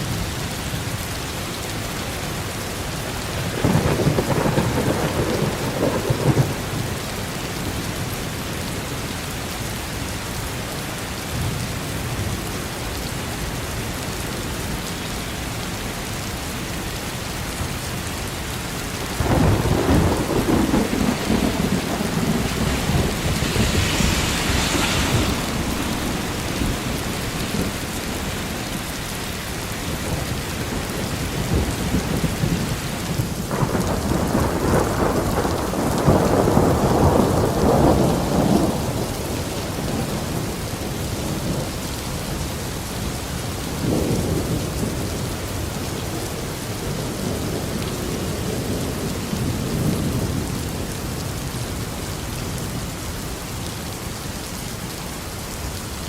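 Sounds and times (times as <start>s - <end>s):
steady rain: 0.0s - 56.0s
thunder rumbling: 3.4s - 7.0s, 19.0s - 42.4s.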